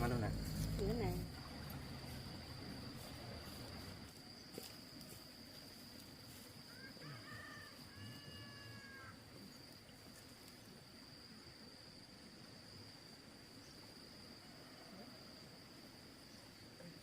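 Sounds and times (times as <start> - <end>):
high-pitched insect trill: 0.0 - 17.0
rooster crowing faintly: 6.7 - 9.2.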